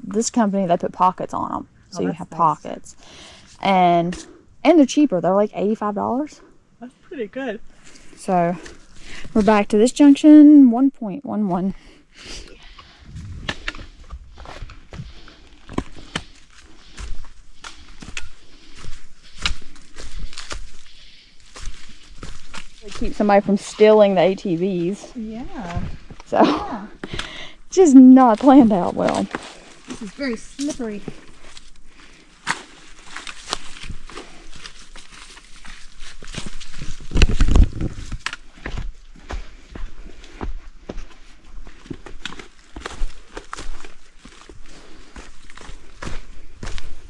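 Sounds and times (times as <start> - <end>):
footsteps on forest trail: 7.6 - 9.7, 11.8 - 47.0
heavy low thud: 13.0 - 14.4.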